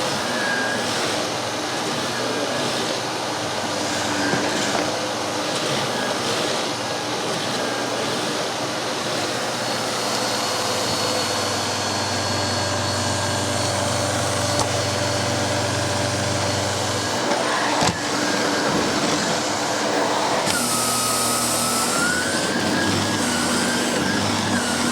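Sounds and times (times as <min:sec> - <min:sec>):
vacuum cleaner running: 0:00.0 - 0:24.9.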